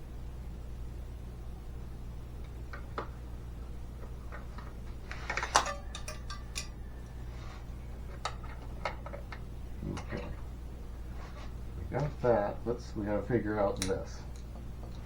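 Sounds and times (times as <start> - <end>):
steady low hum: 0.0 - 15.0
small hard parts clattering: 4.0 - 7.3.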